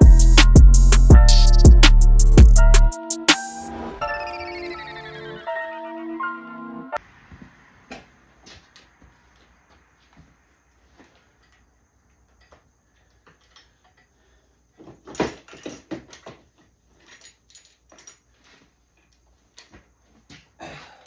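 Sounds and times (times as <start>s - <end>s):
metal tools clinking: 12.3s - 14.2s, 14.8s - 19.8s.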